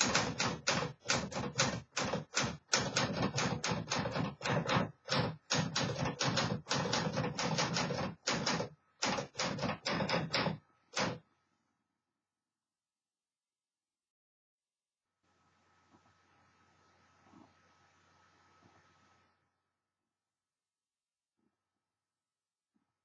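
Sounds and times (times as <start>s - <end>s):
typewriter key strikes: 0.0s - 11.2s.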